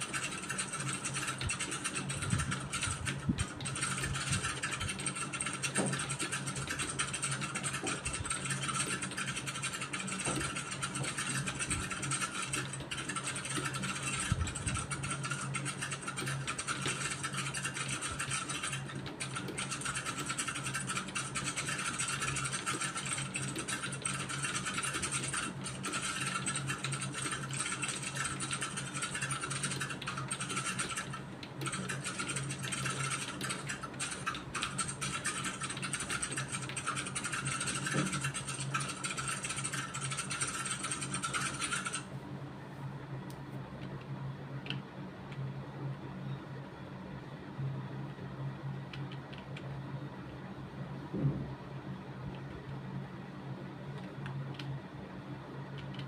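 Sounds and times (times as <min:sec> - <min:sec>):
computer keyboard typing: 0:00.0 - 0:42.1, 0:48.9 - 0:49.8, 0:54.0 - 0:54.8, 0:55.8 - 0:56.0.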